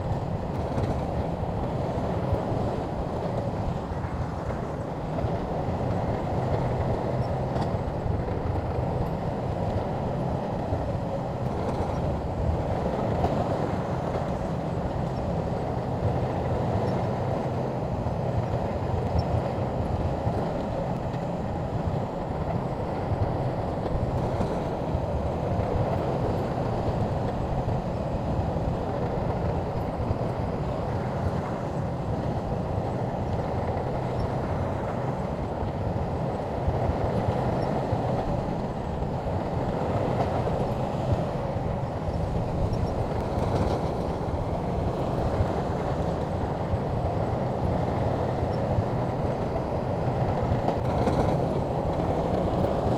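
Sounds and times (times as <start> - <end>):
steel tracks clattering: 0.0 - 52.9.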